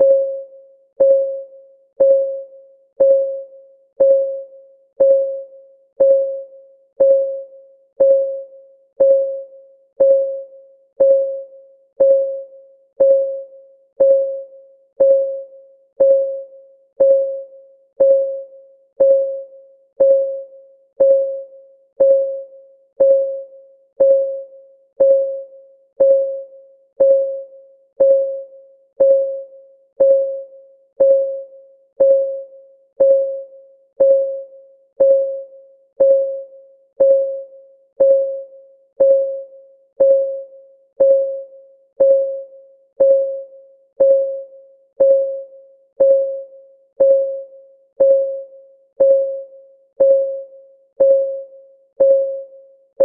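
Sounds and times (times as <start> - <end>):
timer clock ticking: 4.0 - 4.4, 5.0 - 5.4, 7.0 - 7.4, 8.0 - 8.4, 9.0 - 9.4, 10.0 - 10.4, 12.0 - 12.4, 13.0 - 13.4, 18.0 - 18.4, 19.0 - 19.4, 20.0 - 20.4, 21.0 - 21.4, 22.0 - 22.4, 23.0 - 23.4, 24.0 - 24.4, 25.0 - 25.4, 26.0 - 26.4, 31.0 - 31.4, 32.0 - 32.4, 33.0 - 33.4, 34.0 - 34.4, 35.0 - 35.4, 36.0 - 36.4, 37.0 - 37.4, 38.0 - 38.4, 39.0 - 39.4, 40.0 - 40.4, 41.0 - 41.4, 42.0 - 42.4, 43.0 - 43.4, 44.0 - 44.4, 45.0 - 45.4, 46.0 - 46.4, 47.0 - 47.4, 48.0 - 48.4, 49.0 - 49.4, 50.0 - 50.4, 51.0 - 51.4, 52.0 - 52.4.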